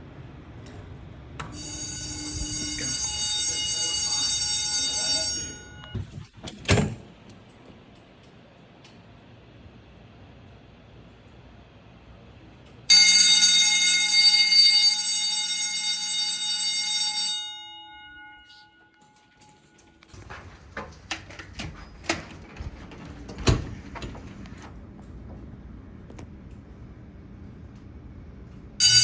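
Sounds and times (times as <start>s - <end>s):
fire alarm bell ringing: 1.4s - 6.0s, 12.9s - 20.4s, 28.8s - 29.0s.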